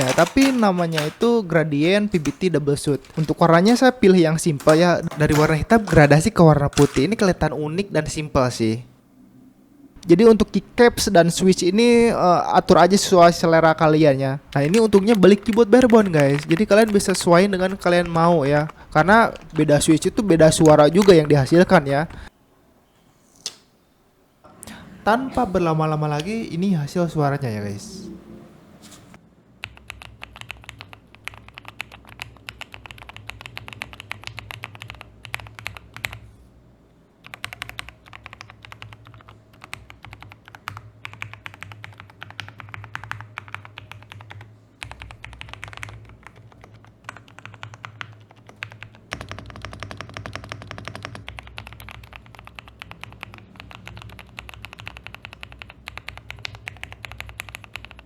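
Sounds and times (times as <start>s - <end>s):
mechanical keyboard typing: 0.0s - 7.5s, 14.5s - 22.3s, 29.6s - 36.2s, 37.2s - 58.0s.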